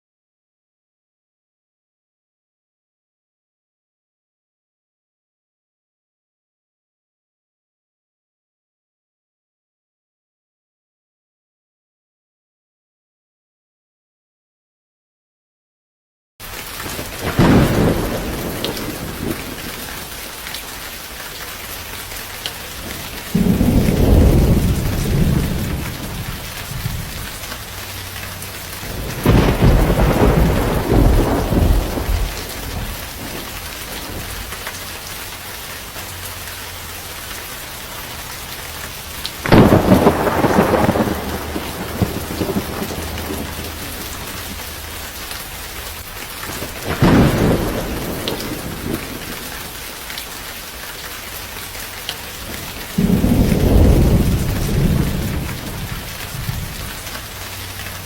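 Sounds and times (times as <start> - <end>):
steady rain falling: 16.4 - 58.0
thunder rumbling: 16.8 - 20.4, 22.8 - 35.1, 39.0 - 45.7, 46.5 - 49.8, 52.5 - 57.4.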